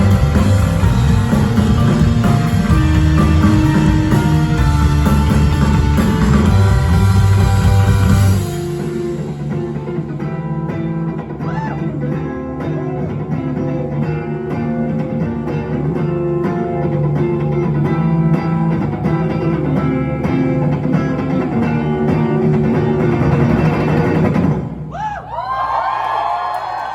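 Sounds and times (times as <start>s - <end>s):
rock band playing: 0.0s - 24.9s
audience cheering and whooping: 24.9s - 26.9s.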